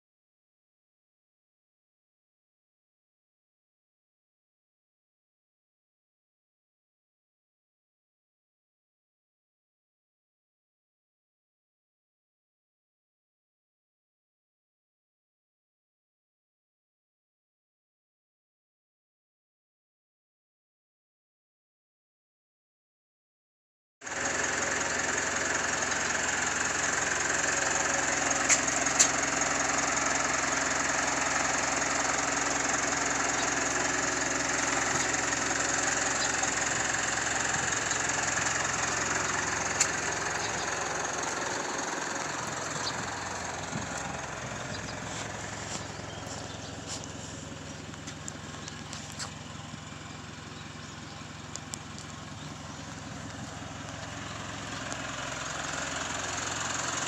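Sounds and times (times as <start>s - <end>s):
vehicle engine running: 24.0s - 57.0s.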